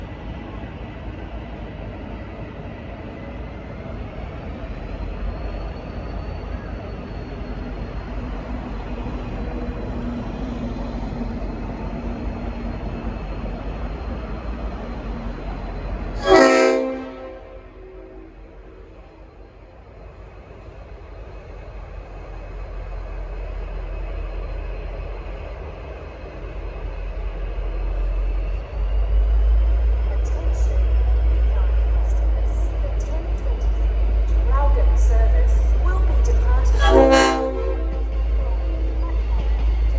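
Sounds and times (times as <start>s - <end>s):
diesel locomotive low rumble: 0.0s - 39.9s.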